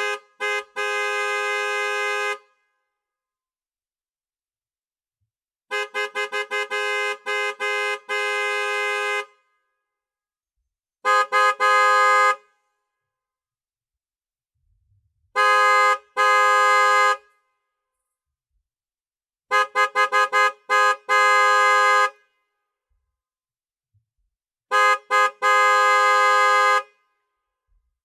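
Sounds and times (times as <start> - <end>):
car horn honking: 0.0 - 2.7, 5.7 - 9.6, 11.0 - 12.7, 15.4 - 17.4, 19.5 - 22.5, 24.7 - 27.2.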